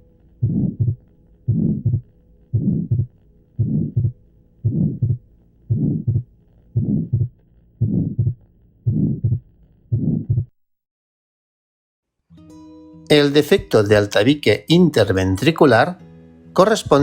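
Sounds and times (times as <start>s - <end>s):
heartbeat with murmur: 0.4s - 10.5s.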